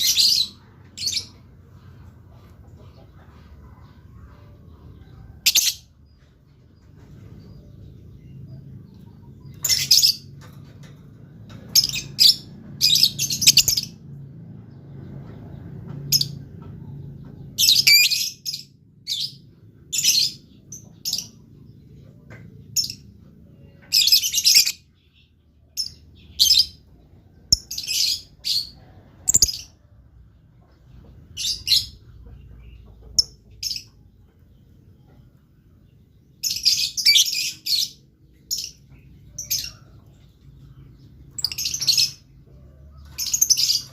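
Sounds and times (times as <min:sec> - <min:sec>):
lovebird chirping: 0:36.4 - 0:39.8.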